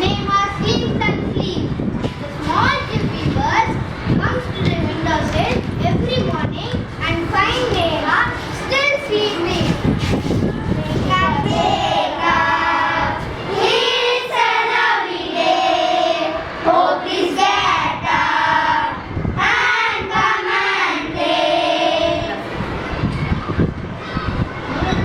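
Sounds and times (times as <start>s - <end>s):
children singing in unison: 10.9s - 22.6s.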